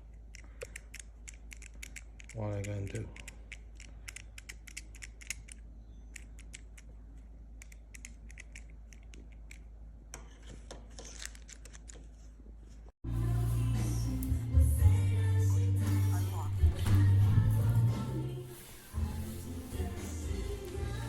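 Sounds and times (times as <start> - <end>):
music: 13.0 - 21.0.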